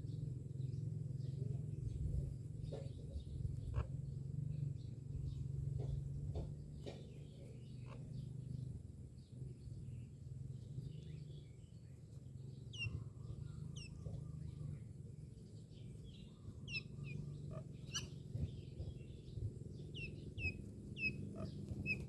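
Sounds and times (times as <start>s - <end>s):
myna birds chirping: 0.0s - 22.0s
steady low hum: 0.0s - 22.0s.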